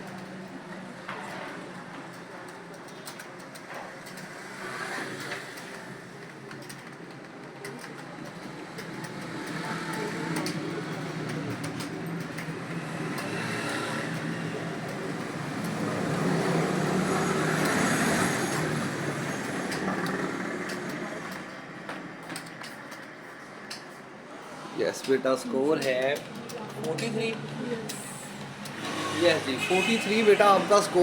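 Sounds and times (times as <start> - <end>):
keyboard keys clicking: 5.6 - 13.4, 25.0 - 28.8.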